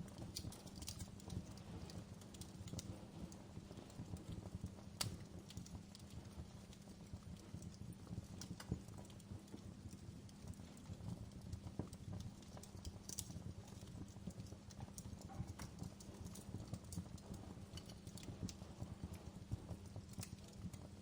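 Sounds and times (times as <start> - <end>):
fire popping and snapping: 0.0 - 21.0
low rumble of flames: 0.0 - 21.0
wood fire crackling: 0.0 - 21.0.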